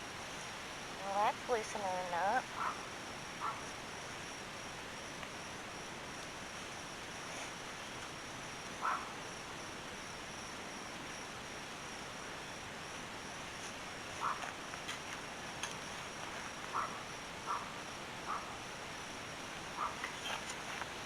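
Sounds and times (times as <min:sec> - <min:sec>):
background hiss: 0:00.0 - 0:21.0
crickets buzzing: 0:00.0 - 0:21.0
brief insect calls: 0:12.3 - 0:21.0.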